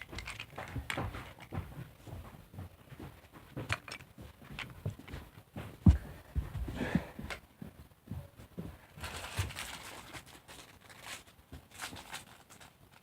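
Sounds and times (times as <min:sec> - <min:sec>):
plastic toy trains clicking: 0:00.0 - 0:01.5.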